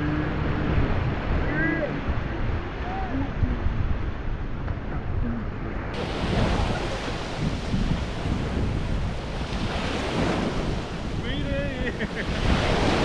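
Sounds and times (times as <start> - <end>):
wind buffeting microphone: 0.0 - 13.0
sea waves washing onto beach: 5.9 - 13.0.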